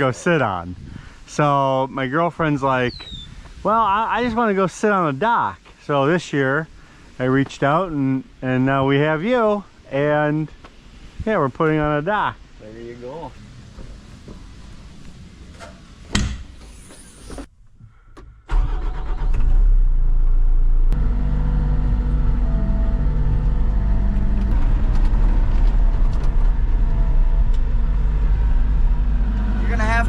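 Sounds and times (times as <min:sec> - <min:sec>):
engine starting and running: 0:18.2 - 0:30.0.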